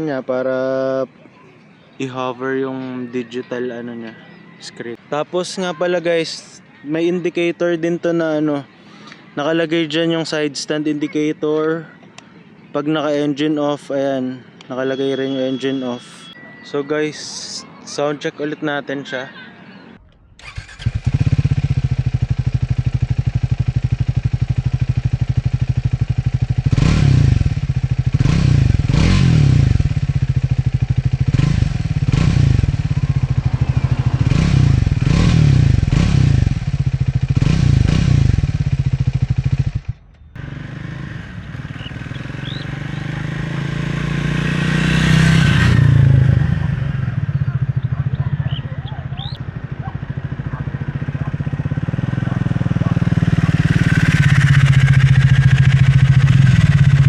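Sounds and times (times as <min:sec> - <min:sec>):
distant engine passing: 0:19.8 - 0:57.0
motorcycle engine revving: 0:20.4 - 0:57.0.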